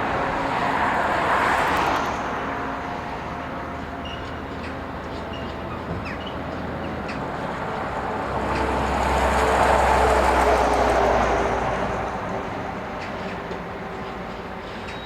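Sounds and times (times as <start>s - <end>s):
train passing: 0.0s - 15.0s.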